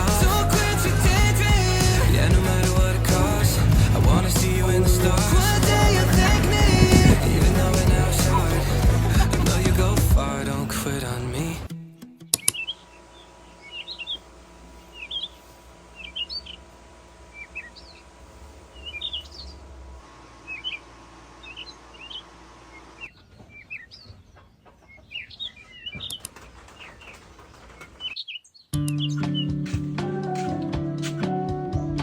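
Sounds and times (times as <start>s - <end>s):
small birds chirping: 12.4s - 19.8s, 20.4s - 29.7s.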